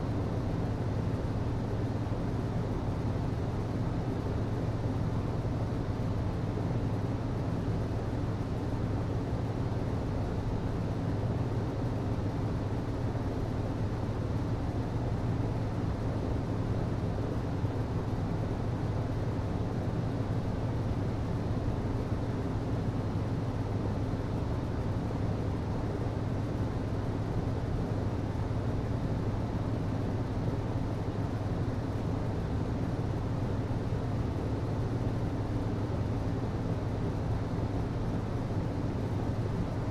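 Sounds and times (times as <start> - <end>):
hvac system humming: 0.0 - 39.9.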